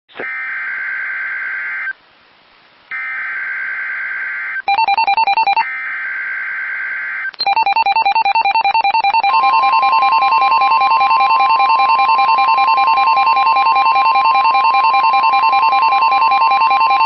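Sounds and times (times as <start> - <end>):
fast two-pitch beeping: 7.4 - 17.0.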